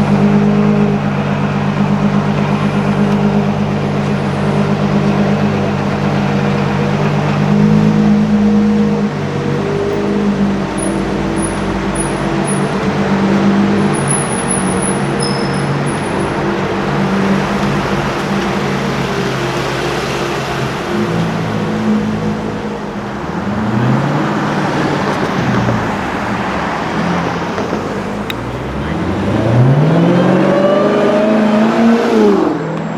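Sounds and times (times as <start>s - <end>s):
car engine revving: 0.0s - 32.9s.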